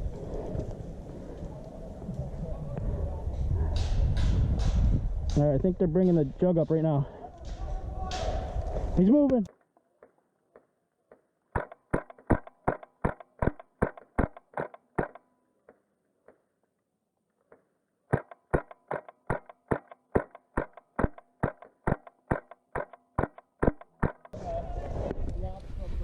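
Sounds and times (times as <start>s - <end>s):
airsoft rifle firing rapid shots: 11.6s - 15.2s, 18.1s - 24.4s.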